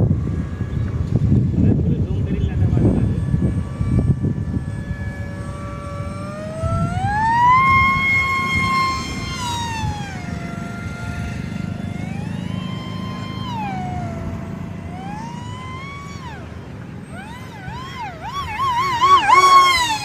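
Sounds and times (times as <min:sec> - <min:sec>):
small motor spinning propeller whine: 0:00.0 - 0:20.0.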